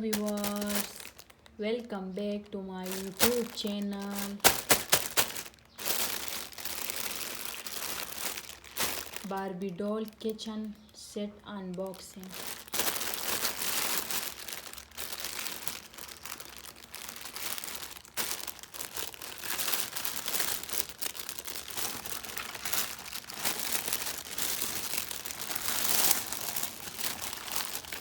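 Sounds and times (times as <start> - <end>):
packaging crinkling: 0.0 - 1.9, 2.8 - 28.0.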